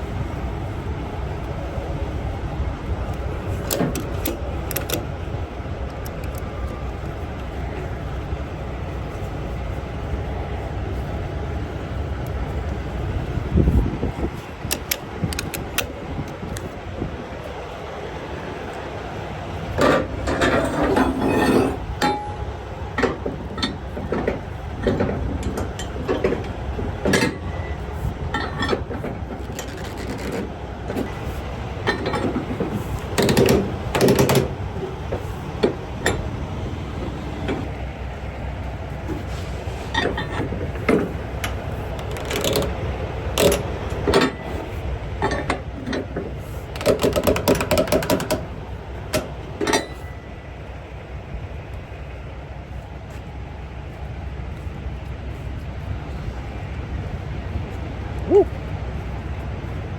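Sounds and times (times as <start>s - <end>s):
low engine rumble: 0.0s - 59.9s
metal clanks of straps and winches: 19.8s - 31.2s, 31.8s - 34.6s, 39.1s - 48.5s, 49.1s - 50.2s.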